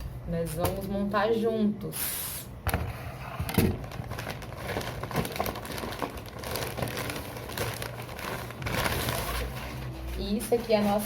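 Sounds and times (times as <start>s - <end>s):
plastic packaging crinkling: 3.5s - 11.0s.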